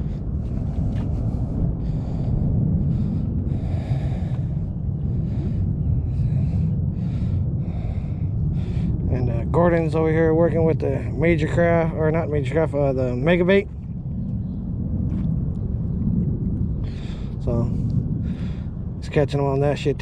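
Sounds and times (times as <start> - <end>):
wind rumbling on microphone: 0.0 - 20.0.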